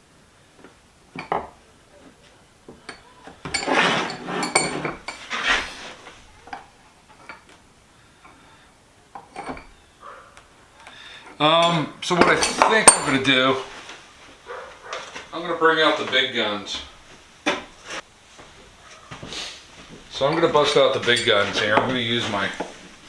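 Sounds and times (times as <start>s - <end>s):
metal tools clinking on workbench: 1.1s - 7.6s, 9.1s - 9.9s, 11.2s - 13.8s, 20.0s - 23.0s.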